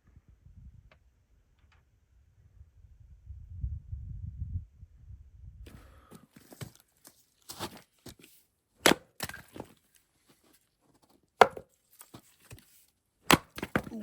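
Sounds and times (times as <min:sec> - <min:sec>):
sharp chopping blows: 0:08.8 - 0:09.1.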